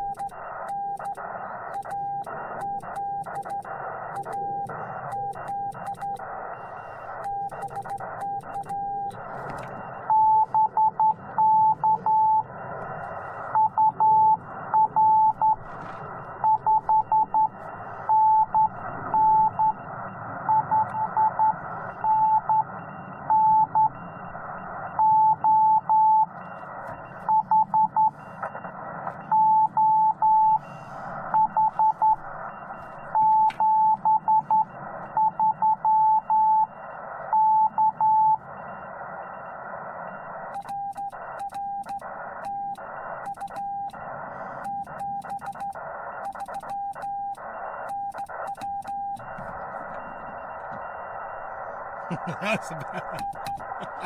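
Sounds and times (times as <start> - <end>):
morse code tone: 13.4 - 15.6, 44.6 - 54.0
receiver hiss: 41.9 - 54.0.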